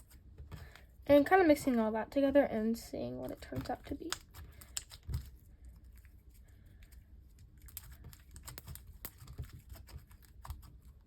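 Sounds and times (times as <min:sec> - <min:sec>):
slime being kneaded: 0:03.2 - 0:06.4, 0:07.3 - 0:11.0.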